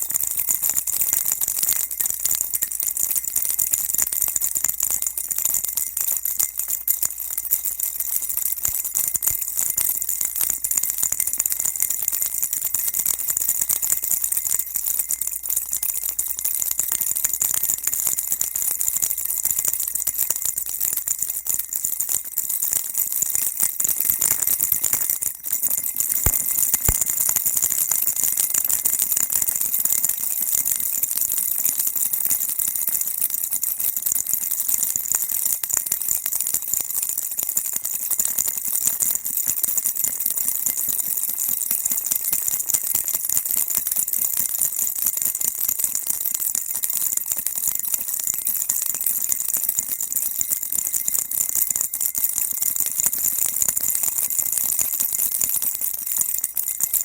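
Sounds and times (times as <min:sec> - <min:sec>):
baby rattle shaking: 0:00.0 - 0:29.8.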